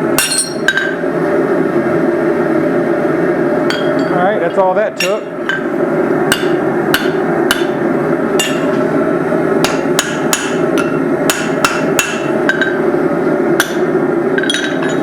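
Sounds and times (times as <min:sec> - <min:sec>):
hammer striking metal on anvil: 0:00.2 - 0:01.0, 0:03.7 - 0:04.2, 0:06.3 - 0:07.8, 0:08.4 - 0:08.8, 0:09.6 - 0:12.8, 0:13.6 - 0:15.0.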